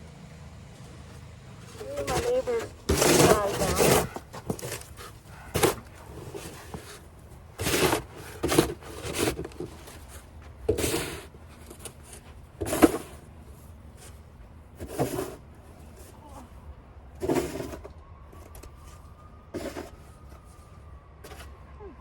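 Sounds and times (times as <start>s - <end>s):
snow shovel scraping snow: 1.6s - 7.0s, 7.6s - 11.3s, 12.0s - 13.2s, 14.8s - 16.1s, 17.2s - 17.8s.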